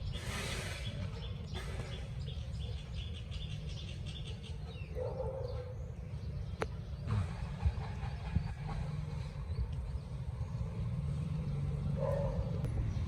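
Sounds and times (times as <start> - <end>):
rush of hiss: 0.1 - 1.1.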